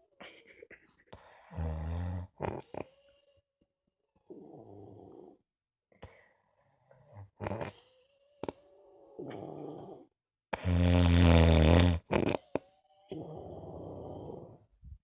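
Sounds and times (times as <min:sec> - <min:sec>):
person snoring: 0:01.1 - 0:03.1, 0:04.3 - 0:05.4, 0:06.0 - 0:14.7.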